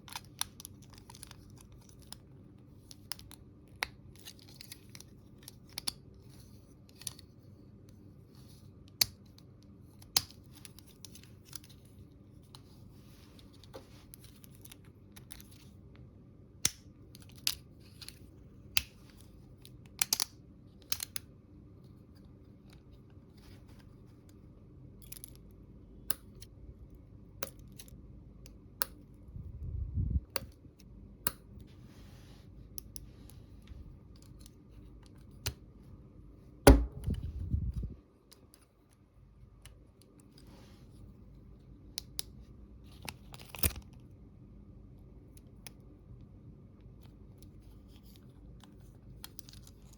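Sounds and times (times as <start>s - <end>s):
low thump: 36.7s - 37.5s.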